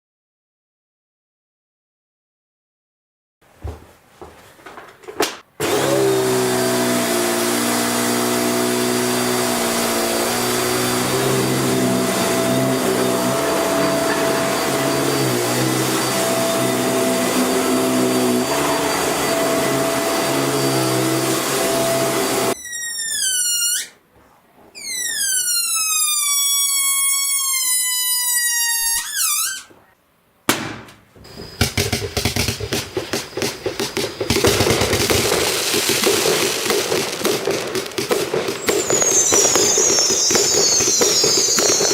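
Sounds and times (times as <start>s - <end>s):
falling whistle-like tones: 8.4s - 24.0s, 24.8s - 29.7s, 31.2s - 41.9s
rapid cracks and pops: 31.8s - 39.6s.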